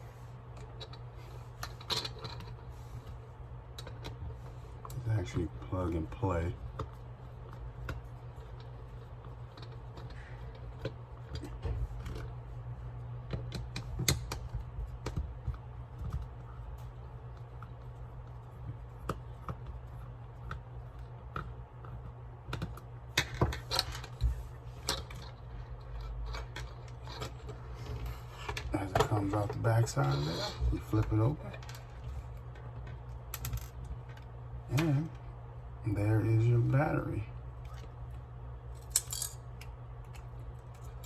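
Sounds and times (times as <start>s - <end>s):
steady low hum: 0.0s - 41.0s.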